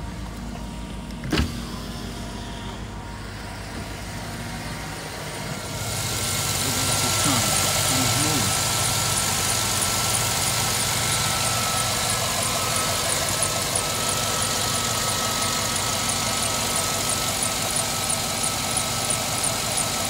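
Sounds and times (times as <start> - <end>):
engine idling: 0.0 - 20.0
light high ticking: 6.6 - 20.0.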